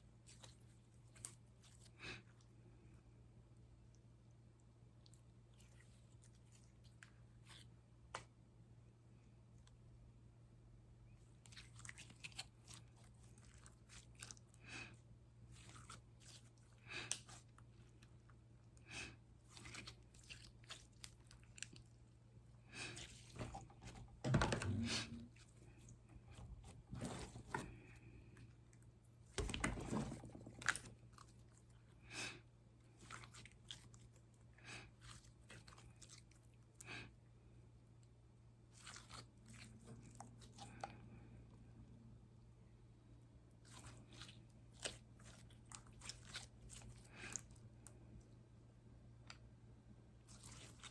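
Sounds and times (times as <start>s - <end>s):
slime squelches: 11.1s - 37.2s, 38.6s - 42.0s, 43.5s - 50.9s
hands kneading sticky slime: 11.2s - 36.7s, 38.6s - 41.4s, 43.5s - 49.5s, 50.1s - 50.9s.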